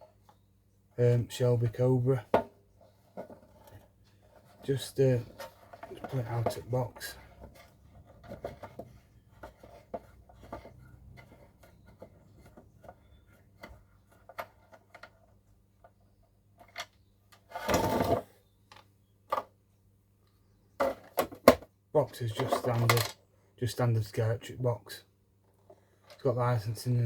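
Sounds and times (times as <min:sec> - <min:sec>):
clicks and rustles of handling: 0:02.2 - 0:19.6, 0:20.2 - 0:23.3, 0:25.4 - 0:26.4.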